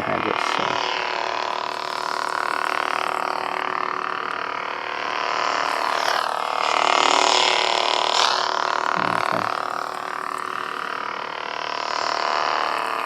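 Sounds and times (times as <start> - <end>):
lightsaber electric hum: 0.0 - 13.0.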